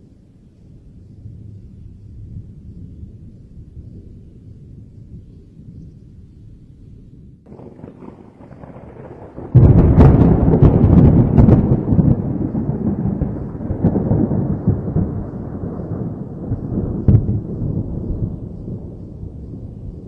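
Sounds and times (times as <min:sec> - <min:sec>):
thunder rumbling and clapping: 0:07.5 - 0:20.0.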